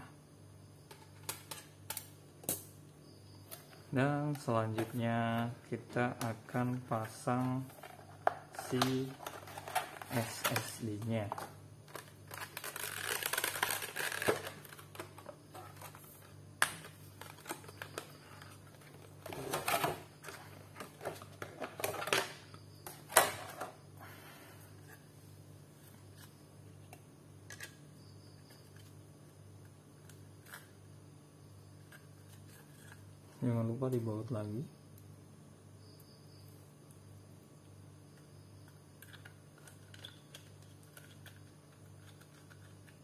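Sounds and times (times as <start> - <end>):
small clicks and handling noises: 0.8 - 2.7, 6.2 - 23.7, 26.1 - 27.8, 37.6 - 43.0.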